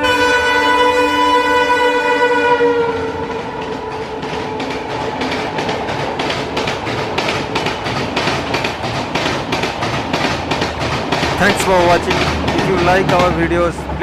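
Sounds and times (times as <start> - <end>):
locomotive horn dropping in pitch: 0.0 - 5.0
train wheels clattering over rail joints: 3.0 - 14.0
steady rushing noise: 3.3 - 14.0.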